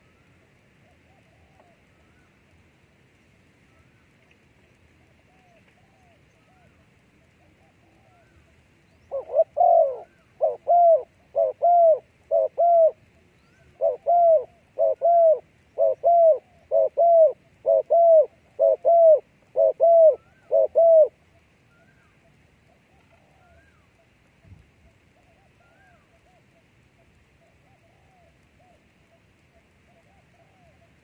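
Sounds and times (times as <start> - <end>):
dove cooing: 0.9 - 1.8, 9.0 - 13.0, 13.6 - 21.2, 29.9 - 31.0.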